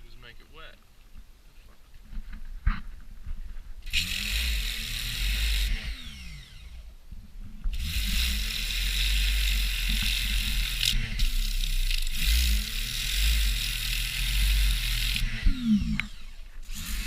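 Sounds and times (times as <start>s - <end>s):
motor spinning up and down: 3.8s - 7.0s, 7.6s - 17.0s.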